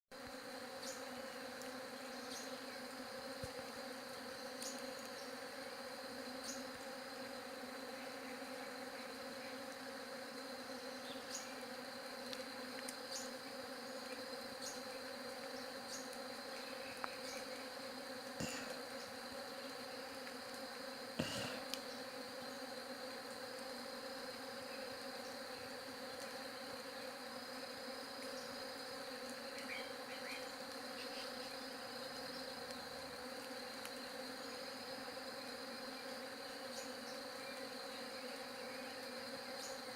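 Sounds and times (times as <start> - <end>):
bees buzzing: 0.2 - 39.9.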